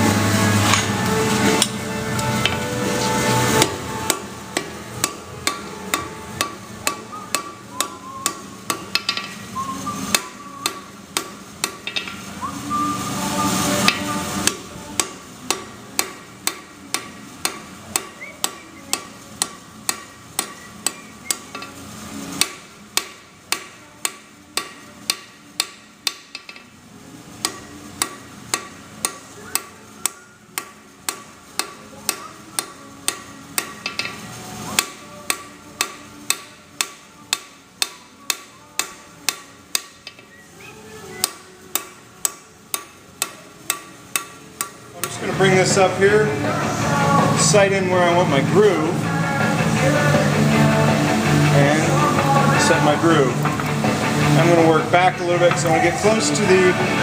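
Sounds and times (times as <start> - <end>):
hammer striking steel on anvil: 3.6 - 9.4, 10.1 - 12.2, 13.9 - 21.7, 22.4 - 26.7, 27.4 - 34.2, 34.8 - 40.3, 41.2 - 45.2.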